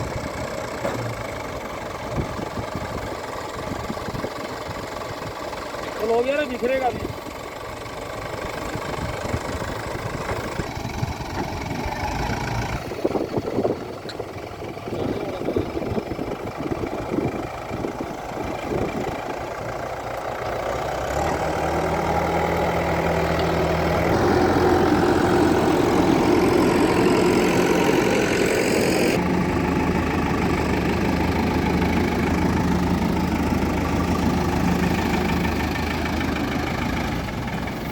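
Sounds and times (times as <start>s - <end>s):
diesel machinery running: 0.0s - 37.9s
knocks and clatter: 0.8s - 1.3s.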